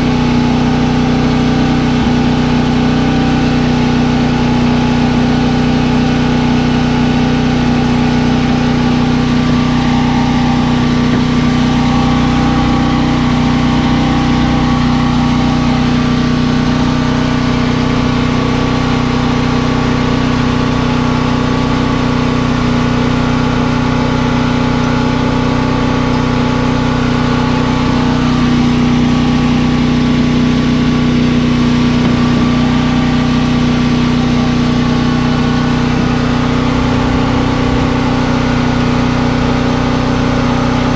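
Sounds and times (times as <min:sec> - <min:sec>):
engine idling: 0:00.0 - 0:40.9.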